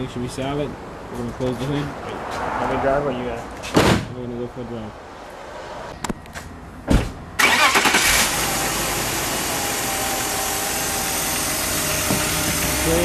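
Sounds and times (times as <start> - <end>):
car engine cranking and idling: 7.3 - 13.0.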